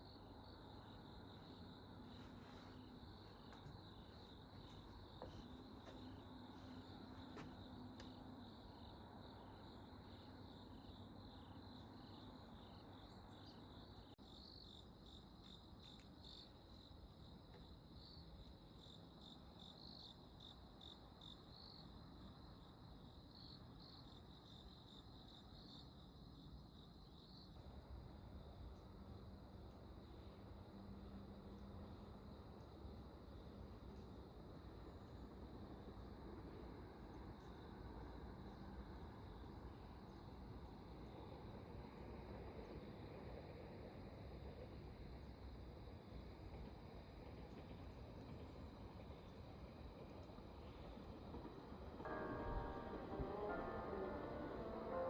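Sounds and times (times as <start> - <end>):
low steady hiss: 52.0 - 55.0.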